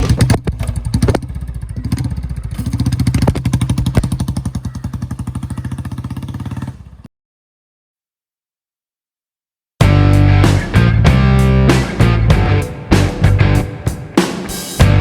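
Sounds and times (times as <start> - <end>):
motorcycle engine running: 0.0 - 7.1.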